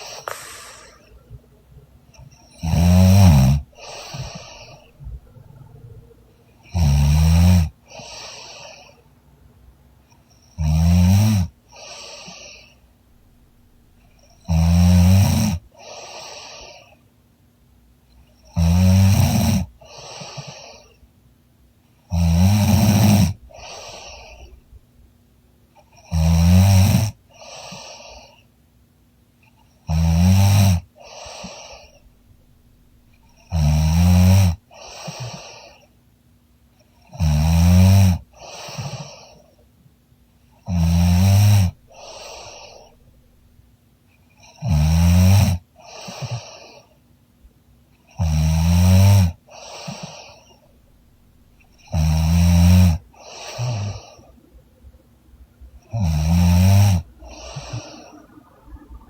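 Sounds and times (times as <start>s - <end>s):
woman snoring loudly: 0.0s - 1.3s, 2.5s - 4.9s, 6.7s - 8.4s, 14.5s - 15.6s, 22.1s - 24.5s, 33.4s - 35.5s, 37.2s - 39.1s, 40.7s - 42.9s, 44.6s - 46.5s, 48.2s - 50.3s, 51.8s - 54.3s, 55.9s - 58.3s
soft breath sound: 0.0s - 10.5s, 11.6s - 15.0s, 22.9s - 25.1s, 27.2s - 28.7s, 30.9s - 36.1s, 38.2s - 39.8s, 40.5s - 44.4s, 45.6s - 47.2s, 49.3s - 59.0s.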